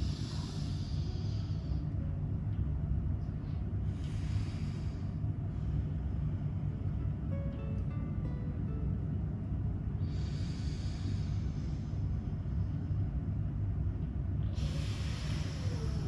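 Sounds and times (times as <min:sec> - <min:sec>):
steady low hum: 0:00.0 - 0:16.0
slow breathing through nostril: 0:14.6 - 0:16.0.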